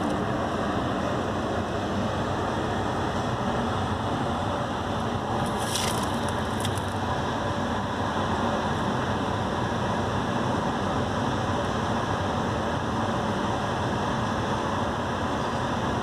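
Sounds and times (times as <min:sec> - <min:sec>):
distant road traffic rumble: 0:00.0 - 0:16.0
brief rustle: 0:05.4 - 0:07.0.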